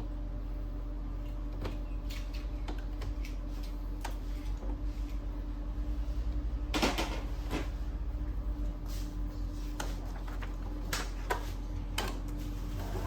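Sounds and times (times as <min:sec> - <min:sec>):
printer humming: 0:00.0 - 0:13.0.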